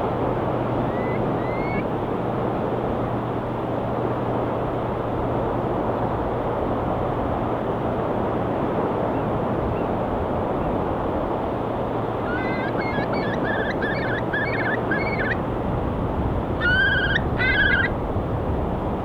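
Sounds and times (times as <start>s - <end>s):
seagull calling: 0.8s - 1.8s, 12.2s - 15.4s, 16.6s - 18.0s.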